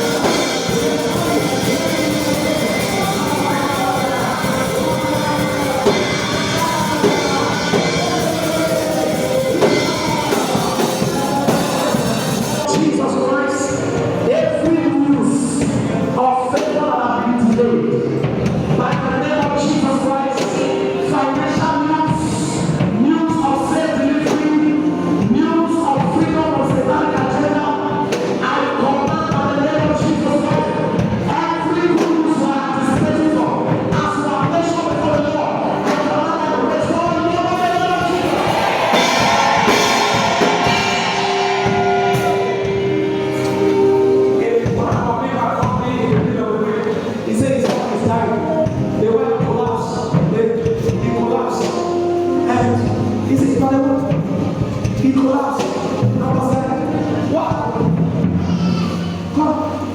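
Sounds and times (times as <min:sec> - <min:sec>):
voices singing: 0:00.0 - 0:12.9, 0:37.4 - 0:44.8
percussion hits: 0:00.0 - 0:13.0, 0:37.6 - 0:46.3
gospel singing: 0:00.0 - 0:16.6, 0:18.7 - 0:58.0
band accompaniment: 0:00.0 - 0:59.9.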